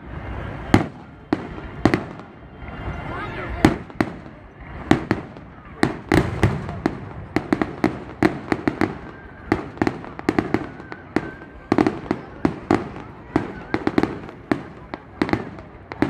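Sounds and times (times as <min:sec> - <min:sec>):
fireworks exploding: 0:00.0 - 0:16.0.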